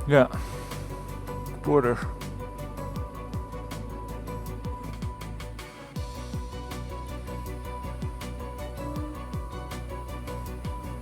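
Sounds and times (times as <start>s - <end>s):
deep kick drum hits: 6.0s - 6.7s, 7.9s - 8.2s, 9.0s - 9.6s.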